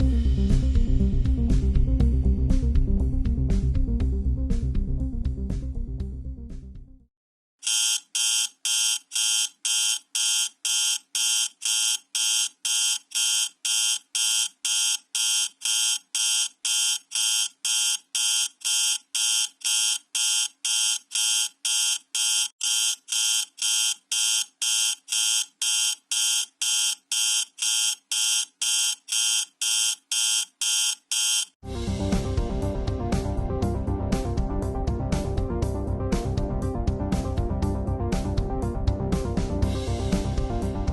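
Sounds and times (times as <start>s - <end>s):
music: 0.0s - 7.1s, 31.6s - 40.9s
warning buzzer beeping: 7.6s - 31.5s.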